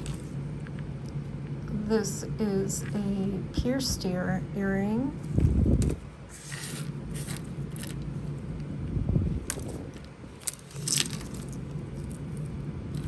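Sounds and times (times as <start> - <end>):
jewelry pieces clinking: 0.0 - 0.3, 6.4 - 8.1, 9.5 - 13.0.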